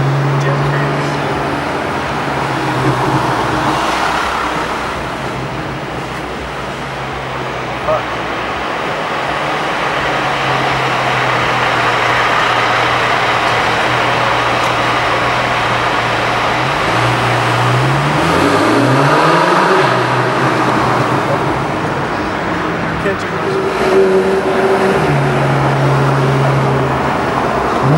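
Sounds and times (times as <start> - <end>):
car engine accelerating: 0.0 - 27.9
road noise: 0.0 - 27.9.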